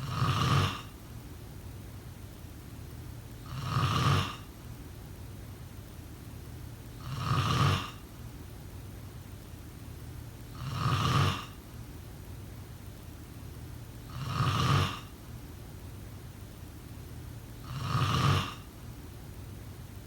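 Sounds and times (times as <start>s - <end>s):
person snoring: 0.0s - 0.9s, 3.4s - 4.5s, 7.0s - 8.0s, 10.6s - 11.6s, 14.1s - 15.1s, 17.6s - 18.7s
steady low hum: 0.0s - 20.0s.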